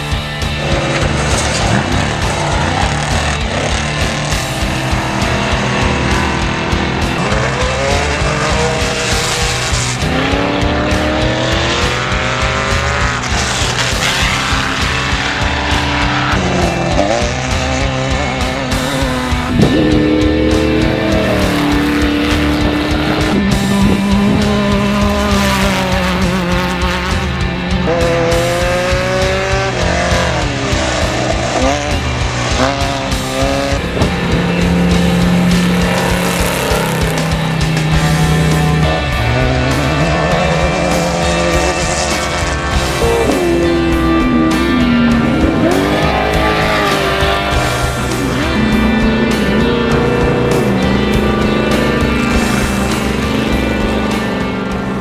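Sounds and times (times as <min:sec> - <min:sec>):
music with steady beat: 0:00.0 - 0:55.0
vehicle engine accelerating: 0:00.0 - 0:55.0.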